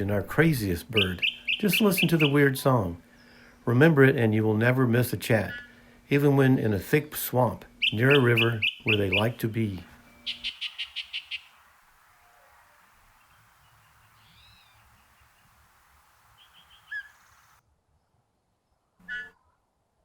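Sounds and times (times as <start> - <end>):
steady hiss: 0.0 - 17.6
bird whistling and chirping: 0.9 - 2.5, 5.4 - 5.8, 7.8 - 9.4, 10.0 - 11.6, 13.2 - 15.5, 16.4 - 17.4, 19.0 - 19.4.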